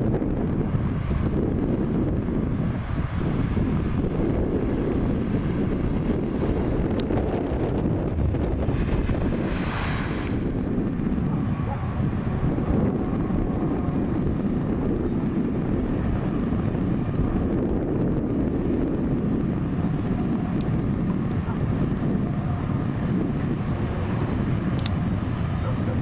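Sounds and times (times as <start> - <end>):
train rumbling past: 2.5 - 17.6.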